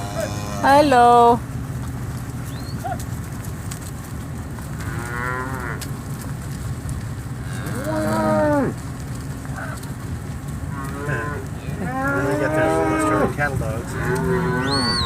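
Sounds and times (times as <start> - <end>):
cattle mooing: 0.0 - 1.4, 4.7 - 5.9, 7.4 - 8.9, 10.7 - 15.0
steady low hum: 0.0 - 15.0.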